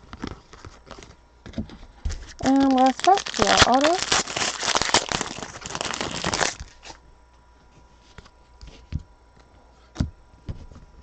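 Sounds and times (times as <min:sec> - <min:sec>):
plastic packaging crinkling: 0:02.1 - 0:07.0.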